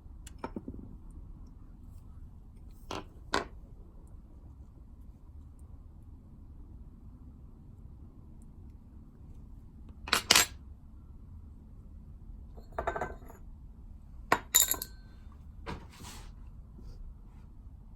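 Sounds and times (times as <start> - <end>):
metal tool clinking and clicking: 14.3 - 15.0.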